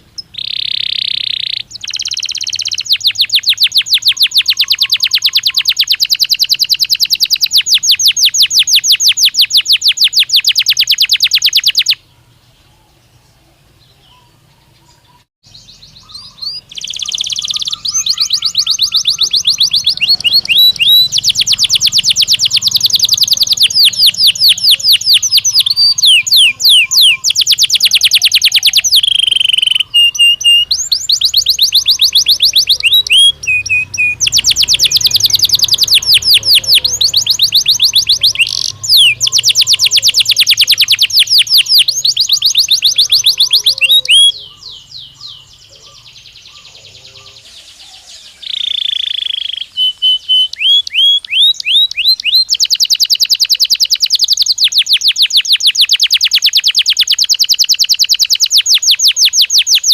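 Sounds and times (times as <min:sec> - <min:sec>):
canary singing trills: 0:00.0 - 0:59.9.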